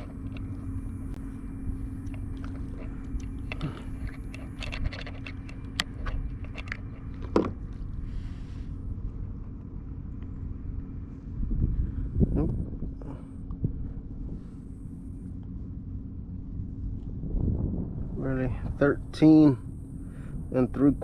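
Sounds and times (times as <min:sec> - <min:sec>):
fish being handled clicks and scrapes: 0:00.0 - 0:00.7, 0:01.9 - 0:07.9
steady low hum: 0:00.0 - 0:21.0.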